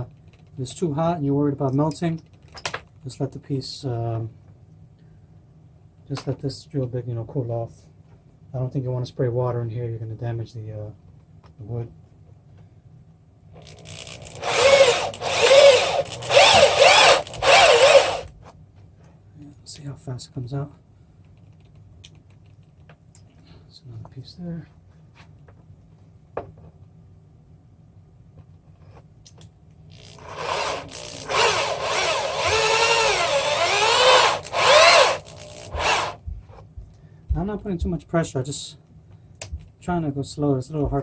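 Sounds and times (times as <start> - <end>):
power drill drilling into plastic: 13.8 - 18.3, 30.0 - 36.2.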